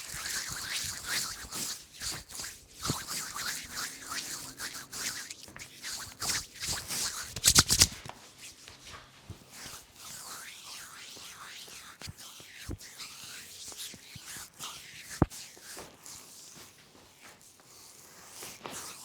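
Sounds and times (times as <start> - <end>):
hands rubbing skin and hair: 0.0 - 8.1
massage slaps: 6.2 - 8.1.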